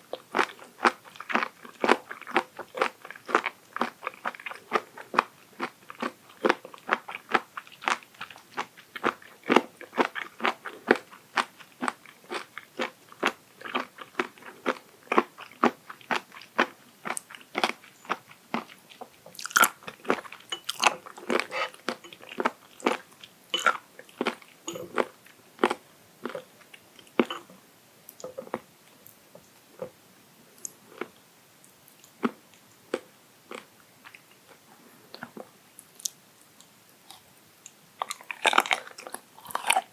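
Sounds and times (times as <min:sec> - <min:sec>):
crunchy chewing: 0:00.1 - 0:27.5, 0:38.0 - 0:39.9.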